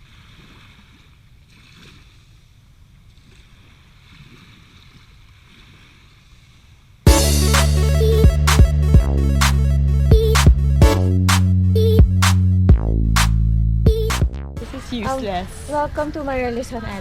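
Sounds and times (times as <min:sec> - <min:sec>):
music with a steady beat: 0:07.1 - 0:14.4.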